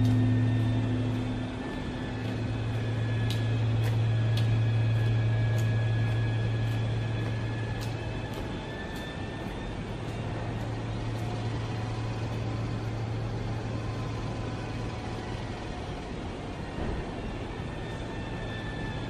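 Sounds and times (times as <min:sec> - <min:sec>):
steady low drone: 0:00.0 - 0:19.0.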